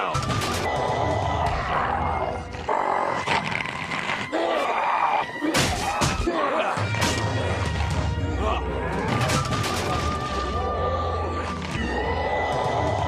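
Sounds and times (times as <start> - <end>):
cartoon dinosaur growls and roars: 0.7 - 5.2, 10.6 - 13.0.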